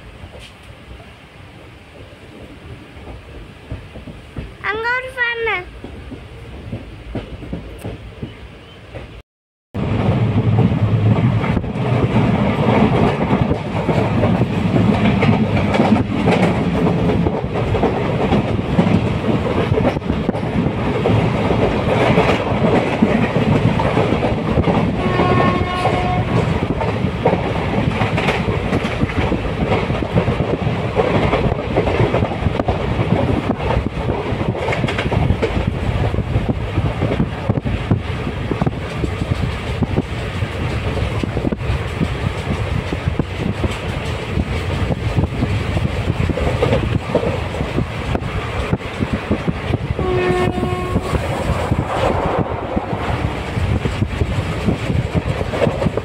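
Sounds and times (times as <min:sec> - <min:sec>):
train wheels clicking on rails: 0:00.0 - 0:01.1, 0:01.9 - 0:09.2, 0:09.8 - 0:56.0
train horn: 0:25.0 - 0:26.5, 0:50.0 - 0:51.2.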